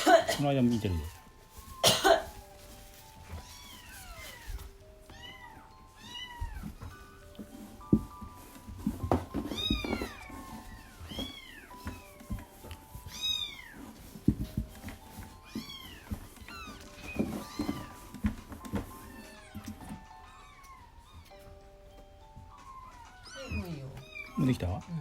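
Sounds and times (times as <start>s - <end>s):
faint background music: 0.0s - 25.0s
kittens mewing: 3.2s - 7.2s, 22.7s - 24.6s.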